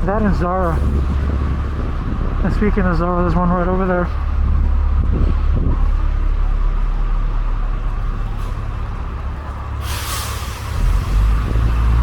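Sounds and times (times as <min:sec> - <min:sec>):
street traffic rumbling: 0:00.0 - 0:12.0
air brakes hissing: 0:09.7 - 0:11.5.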